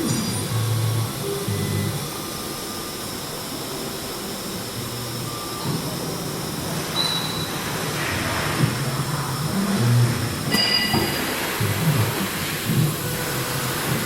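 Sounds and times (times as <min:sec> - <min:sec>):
cnc router whirring: 0:00.0 - 0:14.0.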